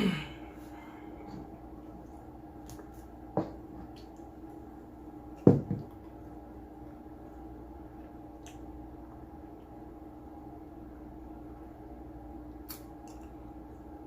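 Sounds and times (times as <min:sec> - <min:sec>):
low hum: 0:00.0 - 0:14.0.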